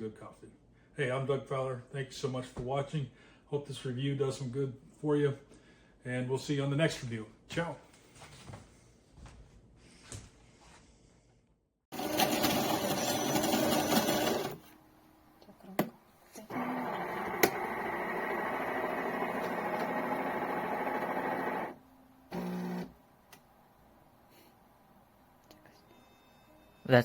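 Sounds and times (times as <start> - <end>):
coffee maker mechanical whirring: 11.9 - 14.6, 16.4 - 23.0
coffee maker noisy burst: 11.9 - 14.6, 16.5 - 22.9.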